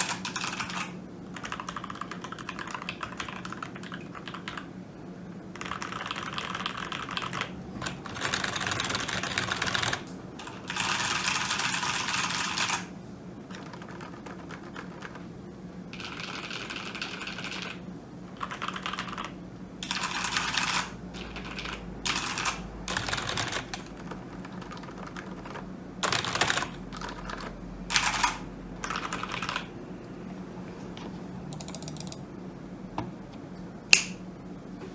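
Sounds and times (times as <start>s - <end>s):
typing on computer keyboard: 0.0s - 4.7s, 5.6s - 12.9s, 13.5s - 15.2s, 15.9s - 17.8s, 18.4s - 29.7s, 31.5s - 32.2s.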